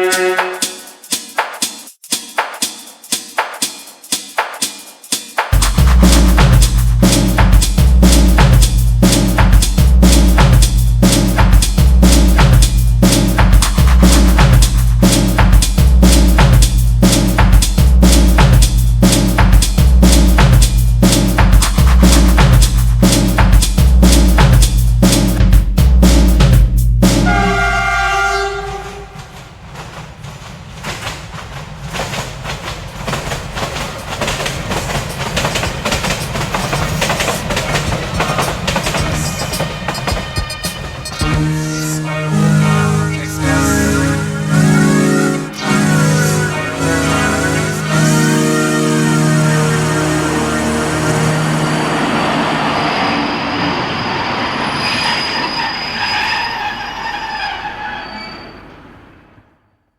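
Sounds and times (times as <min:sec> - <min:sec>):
train wheels clattering on track: 0:28.5 - 0:41.2
wheel and brake squeals: 0:49.8 - 0:59.3.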